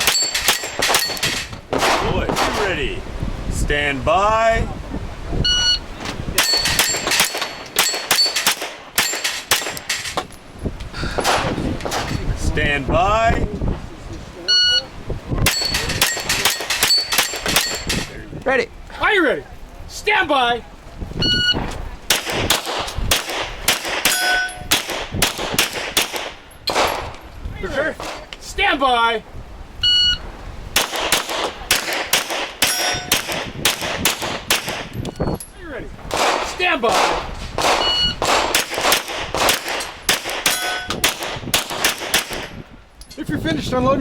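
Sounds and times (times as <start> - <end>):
steel plates pinging: 0.0 - 1.6, 5.6 - 10.5, 15.4 - 18.2, 24.0 - 24.9, 31.7 - 35.6, 39.8 - 41.1
pistol shots: 0.0 - 2.8, 6.4 - 10.2, 11.2 - 12.2, 22.1 - 27.2, 30.8 - 34.9, 36.1 - 42.6
shot timer beep: 5.4 - 5.8, 21.2 - 21.6, 29.8 - 30.2, 37.8 - 38.2.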